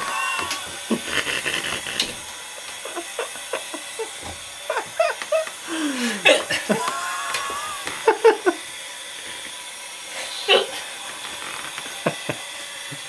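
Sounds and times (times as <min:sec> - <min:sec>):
laughter: 0:00.9 - 0:02.0, 0:02.6 - 0:05.6, 0:06.2 - 0:08.6, 0:11.9 - 0:12.6.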